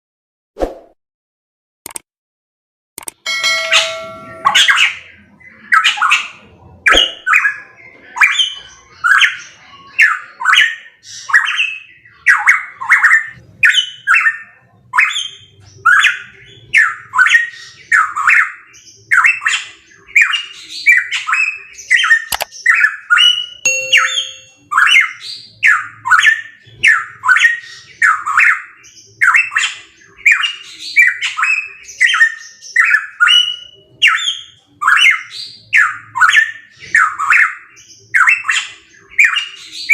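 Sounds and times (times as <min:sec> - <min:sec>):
bird calling harsh notes: 0:03.3 - 0:05.0.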